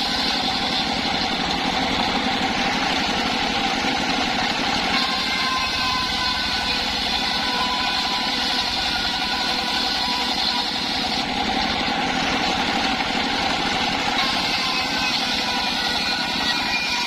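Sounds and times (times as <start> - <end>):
circular saw blade whine: 0.0 - 17.0
engine droning: 0.0 - 17.0.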